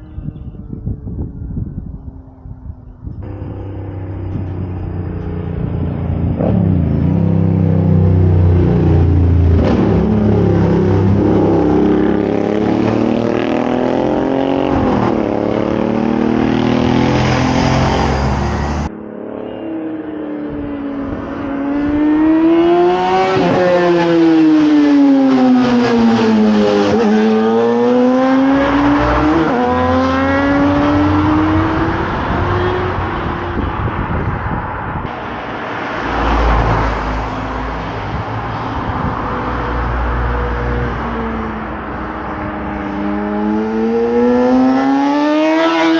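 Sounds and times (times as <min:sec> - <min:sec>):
motorcycle engine revving: 0:03.2 - 0:18.9, 0:21.0 - 0:34.1, 0:42.9 - 0:45.9.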